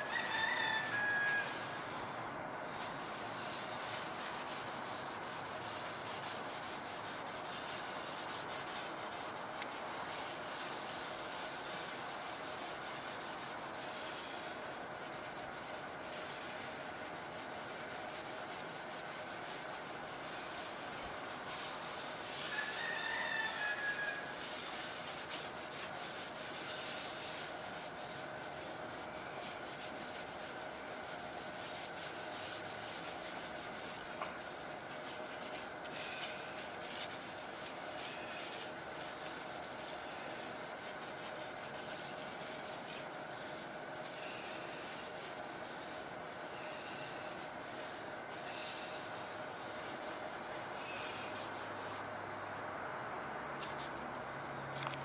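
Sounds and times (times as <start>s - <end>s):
hand scrubbing rubbing hiss: 0.0s - 52.6s, 53.5s - 55.0s.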